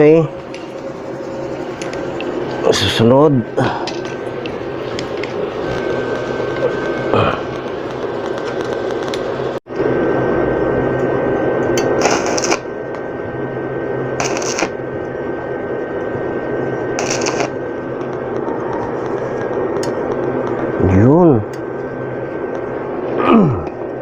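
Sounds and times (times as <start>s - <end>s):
welding arc crackling: 0.1s - 9.6s, 11.6s - 13.0s, 14.2s - 14.8s, 16.8s - 22.9s.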